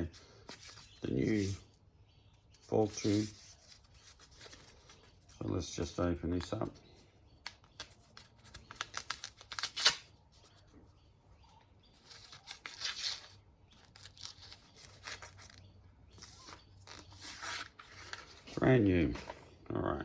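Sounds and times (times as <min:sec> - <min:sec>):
packaging tearing and rustling: 0:08.4 - 0:10.1.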